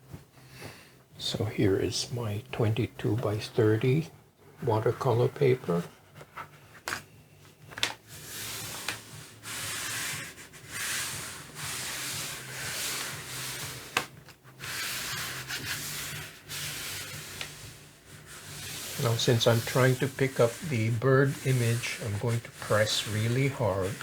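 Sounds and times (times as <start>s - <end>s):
hands rubbing over paper: 8.1s - 24.0s.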